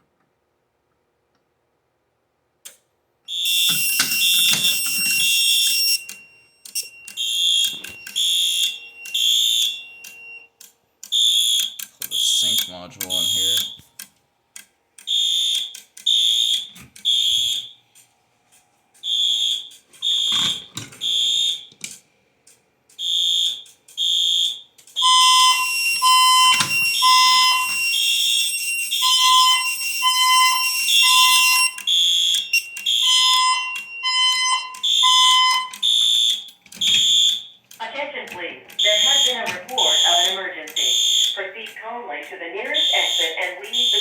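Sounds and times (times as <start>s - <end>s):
lower alarm tone: 3.3s - 10.5s, 11.2s - 13.8s, 23.0s - 37.6s, 38.8s - 41.4s, 42.7s - 44.0s
fire alarm horn beeps: 3.3s - 13.9s, 15.0s - 18.0s, 19.0s - 21.7s, 23.0s - 37.6s, 38.2s - 44.0s.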